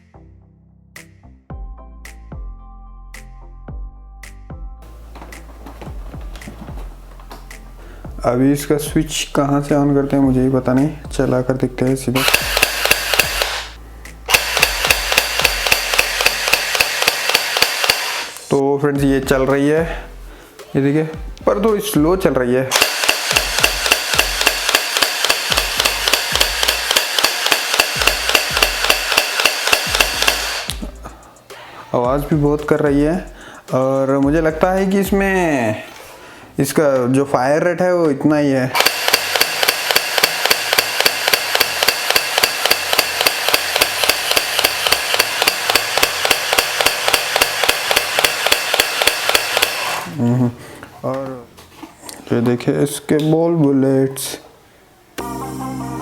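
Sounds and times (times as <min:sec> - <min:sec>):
toy blaster motor clacking: 0:12.2 - 0:18.5, 0:22.7 - 0:30.8, 0:38.8 - 0:50.1.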